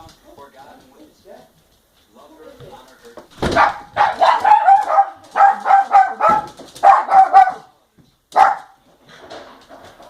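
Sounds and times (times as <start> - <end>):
dog barking: 3.5 - 8.8.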